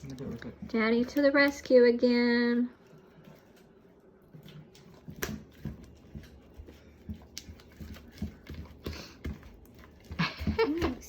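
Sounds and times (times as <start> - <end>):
slime squelching: 3.0 - 11.0.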